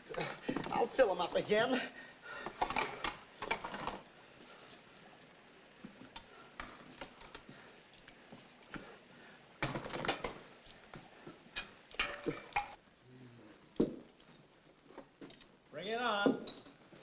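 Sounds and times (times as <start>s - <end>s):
bowls and utensils clinking: 11.6s - 12.8s.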